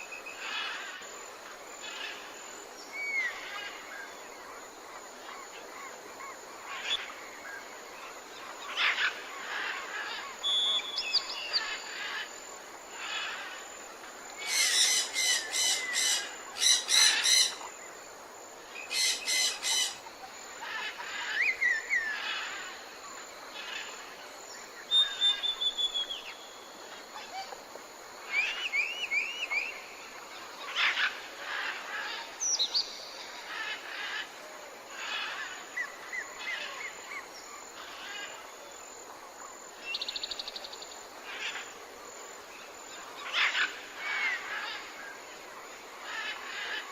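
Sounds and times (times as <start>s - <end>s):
faint steady hiss: 0.0s - 46.9s
forest birds singing: 0.0s - 46.9s.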